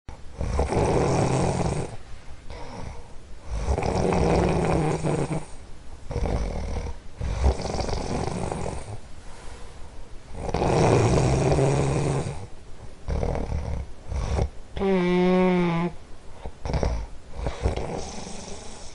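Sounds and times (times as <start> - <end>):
person snoring: 0.4 - 9.0, 10.4 - 12.5, 16.6 - 18.9.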